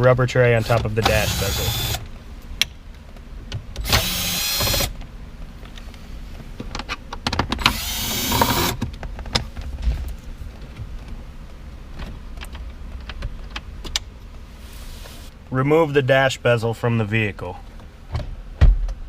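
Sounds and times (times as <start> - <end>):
electric drill spinning out screws: 0.7 - 2.0, 3.8 - 4.9, 7.6 - 8.8.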